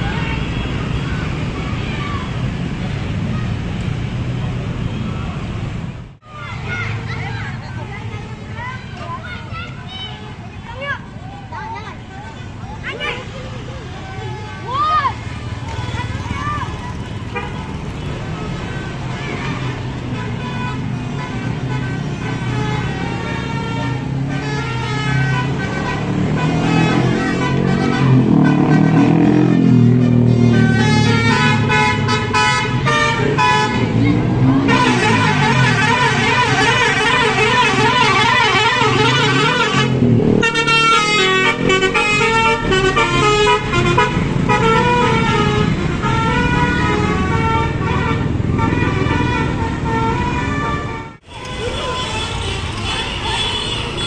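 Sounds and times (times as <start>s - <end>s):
multi-tone bus air horns: 18.4s - 54.0s
bus engine running: 28.0s - 54.0s.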